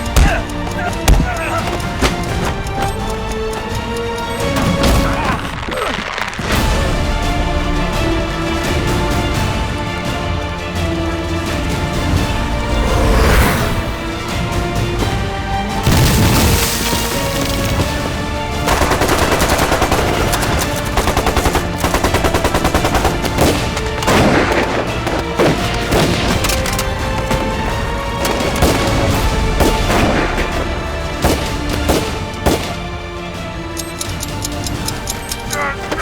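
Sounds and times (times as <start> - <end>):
tense film music: 0.0 - 36.0
heavy blasts: 11.1 - 36.0
machine-gun fire: 18.6 - 27.6
single gunshots: 31.2 - 32.9.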